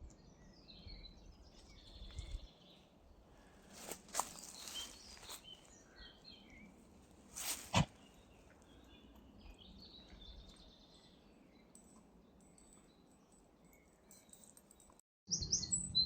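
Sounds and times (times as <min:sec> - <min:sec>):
birds chirping and trilling: 0:00.1 - 0:16.0
rustling: 0:03.5 - 0:05.8, 0:06.7 - 0:08.6.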